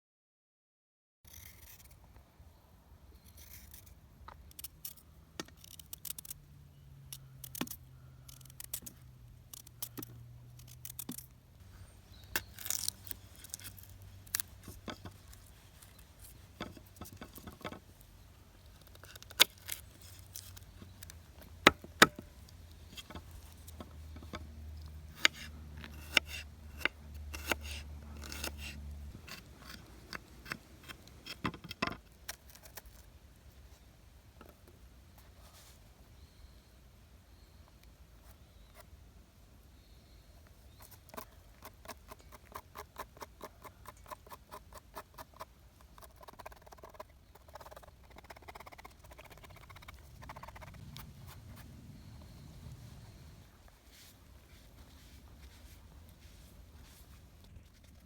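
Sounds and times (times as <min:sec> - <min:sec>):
faint low hum: 0:01.4 - 0:58.0
sharp clicks snaps and scrapes: 0:03.3 - 0:06.4, 0:07.1 - 0:11.3.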